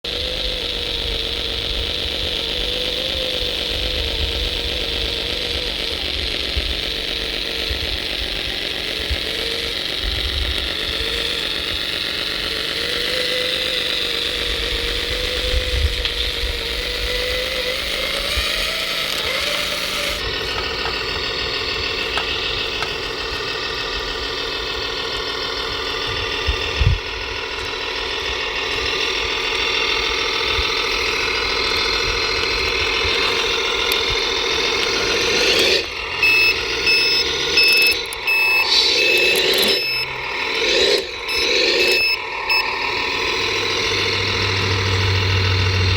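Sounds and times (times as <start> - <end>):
model truck motor whine: 0.0 - 45.9
low rumble: 39.8 - 45.9.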